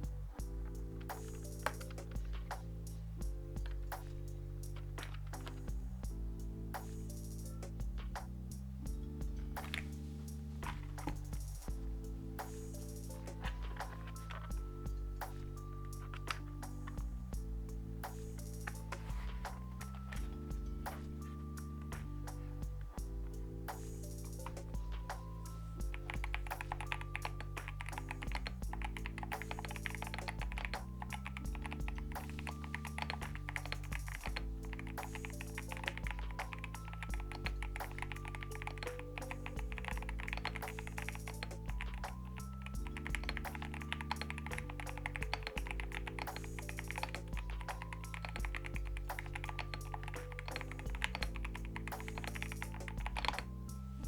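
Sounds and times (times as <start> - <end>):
background music with held chords: 0.0 - 54.0
fast typing on mechanical keyboard: 25.9 - 53.6.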